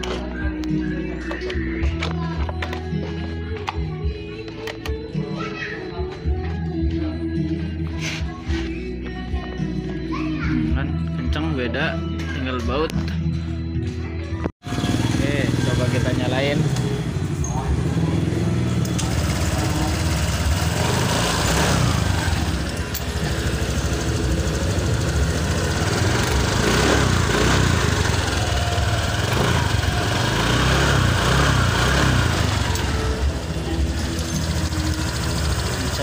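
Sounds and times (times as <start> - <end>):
scooter engine running: 14.6 - 36.0.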